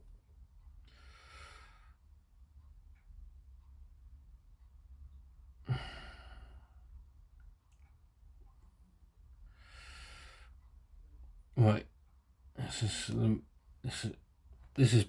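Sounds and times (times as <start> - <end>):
low steady hum: 0.0 - 15.0
person sighing heavily: 5.7 - 6.6.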